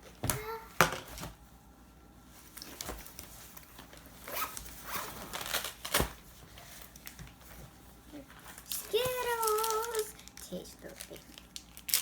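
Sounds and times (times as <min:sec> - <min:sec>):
zipper being pulled: 0:04.3 - 0:05.4.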